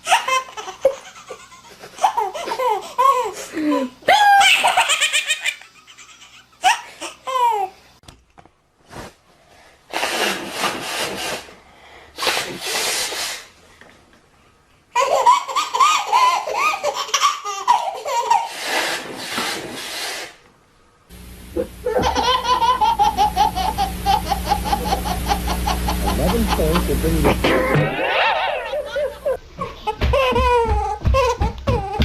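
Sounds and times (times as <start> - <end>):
baby laughing: 0.0 - 7.7, 14.9 - 18.7, 21.6 - 32.0
steady low hum: 20.6 - 32.0.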